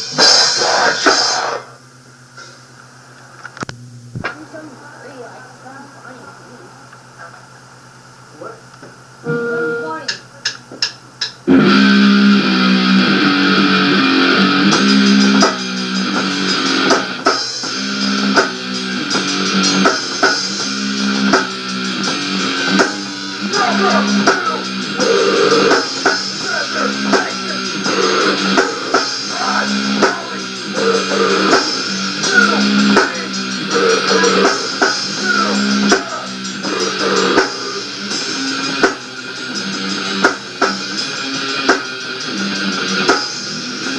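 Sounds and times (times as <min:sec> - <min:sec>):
rock band playing: 0:11.5 - 0:43.9.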